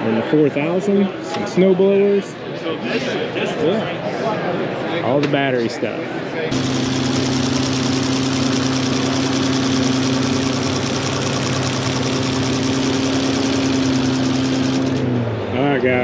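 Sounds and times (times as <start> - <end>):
engine idling: 6.5 - 15.1.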